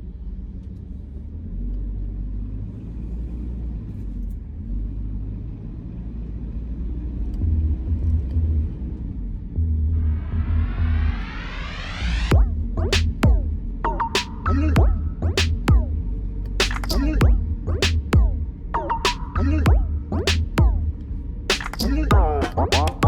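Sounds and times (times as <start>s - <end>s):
deep low rumble: 7.2s - 23.0s
rising electronic sweep: 9.9s - 23.0s.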